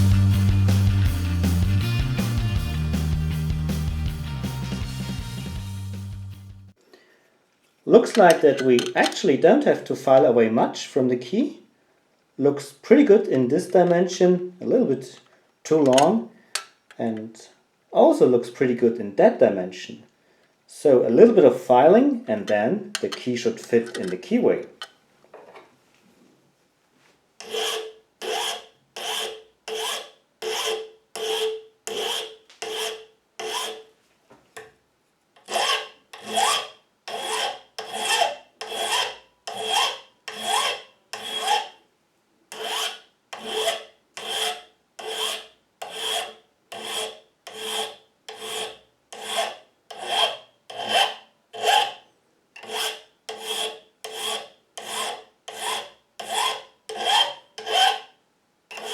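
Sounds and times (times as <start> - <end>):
file rasping on metal key: 27.4 - 33.9, 35.4 - 41.8, 42.5 - 52.0, 52.6 - 58.1.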